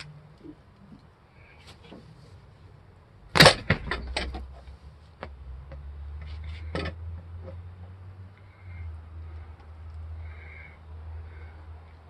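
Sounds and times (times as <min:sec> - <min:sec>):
sharp knocks and clatter: 0:03.3 - 0:07.6.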